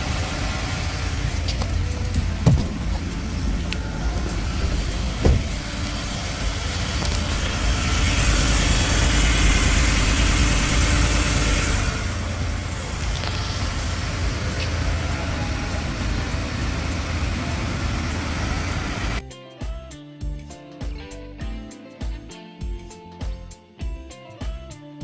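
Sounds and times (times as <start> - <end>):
truck engine running: 0.0 - 19.2.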